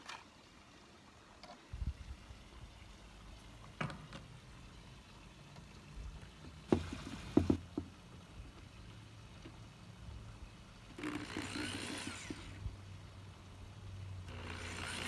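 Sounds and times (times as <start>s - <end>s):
wooden drawer knocks and clunks: 6.7s - 7.9s.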